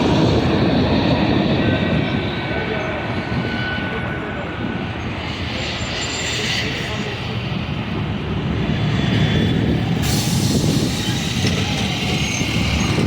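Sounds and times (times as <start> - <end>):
passing vehicles rumbling: 0.0 - 13.0
hiss: 10.0 - 12.2.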